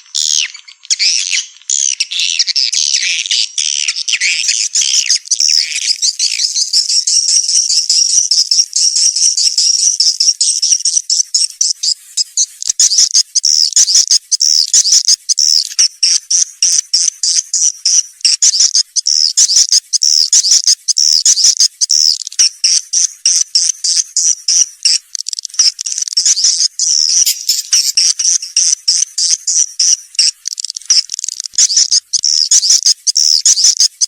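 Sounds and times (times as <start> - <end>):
swiftlets twittering: 23.9 - 33.9.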